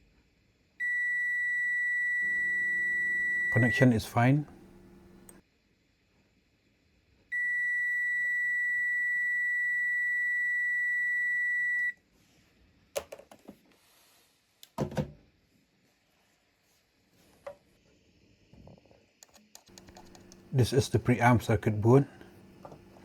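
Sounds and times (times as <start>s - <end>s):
multimeter continuity beep: 0.8s - 5.4s
test probes clicking: 2.2s - 5.4s, 19.6s - 21.2s.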